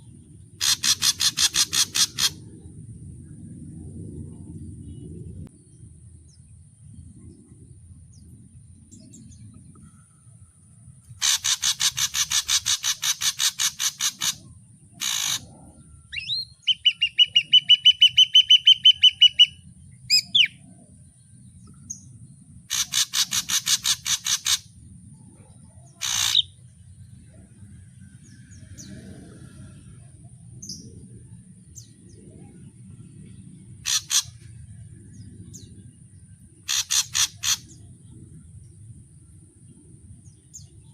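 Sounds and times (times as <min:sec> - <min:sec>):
bird harsh rattling calls: 0:00.6 - 0:02.4, 0:11.2 - 0:15.5, 0:22.7 - 0:24.7, 0:25.9 - 0:26.5, 0:33.8 - 0:34.4, 0:36.6 - 0:37.8
bird whistled notes: 0:16.1 - 0:20.6.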